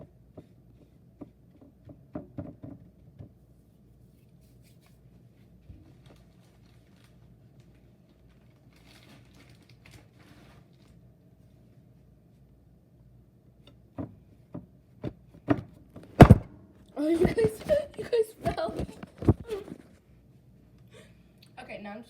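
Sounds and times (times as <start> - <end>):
taps and knocks on kitchen counter: 1.2 - 3.3
soft rustle: 3.5 - 12.4, 17.0 - 20.0.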